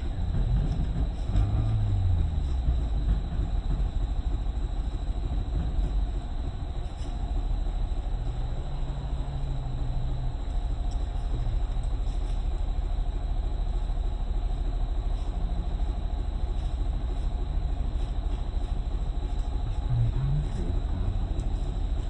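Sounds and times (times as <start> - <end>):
vehicle engine rumbling: 0.0 - 22.0.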